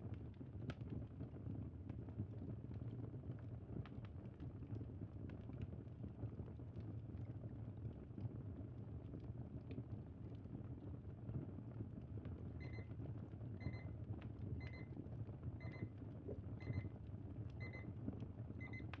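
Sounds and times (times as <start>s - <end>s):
digital timer beeping: 12.6s - 12.8s, 13.6s - 13.9s, 14.6s - 14.9s, 15.6s - 15.9s, 16.6s - 16.9s, 17.6s - 17.8s, 18.6s - 18.8s.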